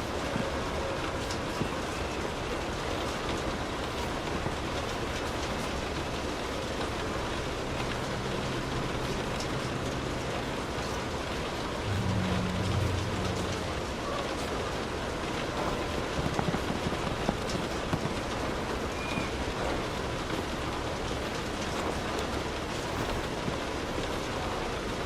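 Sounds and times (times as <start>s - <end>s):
light rain on a car: 0.0s - 25.0s
low rumble: 11.7s - 15.4s.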